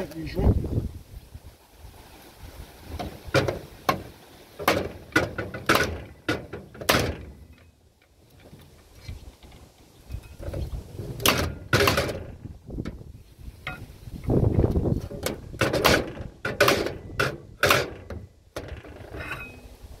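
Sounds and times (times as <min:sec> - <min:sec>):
metal knocks and clanks: 0:03.0 - 0:07.6, 0:10.2 - 0:13.0, 0:14.5 - 0:19.6.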